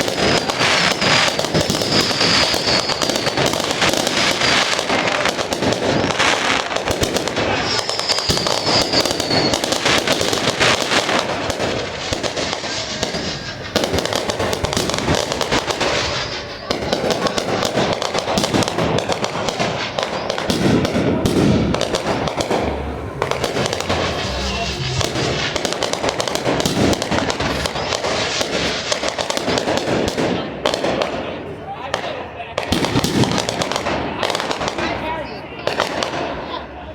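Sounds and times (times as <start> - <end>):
firework whistle: 0.0 - 30.0
fireworks bangs and crackling: 0.0 - 36.9.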